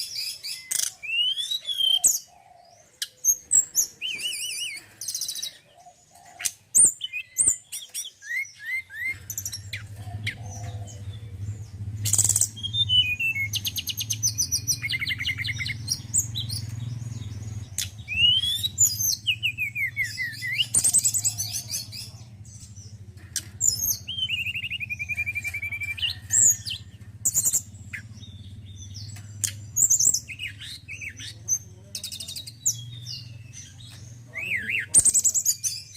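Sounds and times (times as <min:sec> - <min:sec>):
bird singing chirps and trills: 0:00.0 - 0:35.9
steady low hum: 0:09.1 - 0:34.4.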